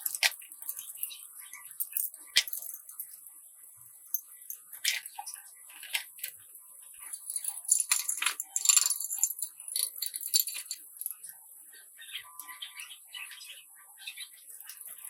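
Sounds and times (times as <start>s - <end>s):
small hard objects clinking: 0.0s - 3.2s, 7.0s - 11.4s.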